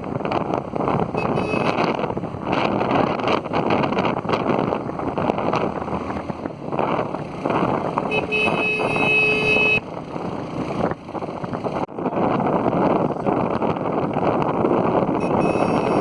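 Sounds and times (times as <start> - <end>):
wind rushing over microphone: 0.0 - 16.0
vehicle horn: 1.2 - 1.9, 8.1 - 9.8, 15.2 - 16.0.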